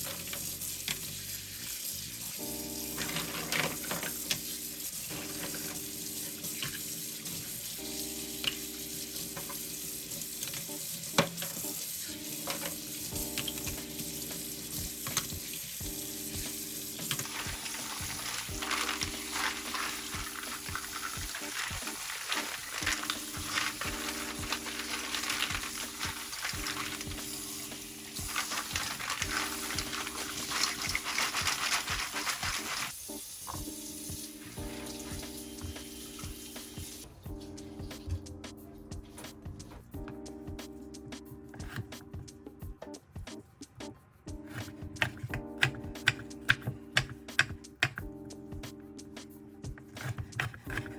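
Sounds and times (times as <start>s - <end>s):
food sizzling in a frying pan: 0.0s - 37.0s.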